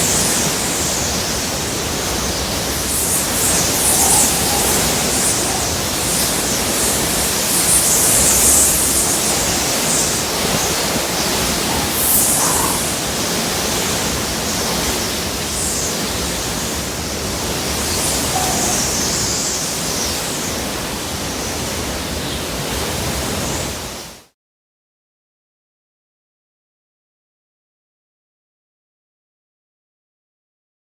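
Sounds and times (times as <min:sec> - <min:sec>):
rain: 0:00.0 - 0:21.1
gusting wind: 0:00.0 - 0:23.6.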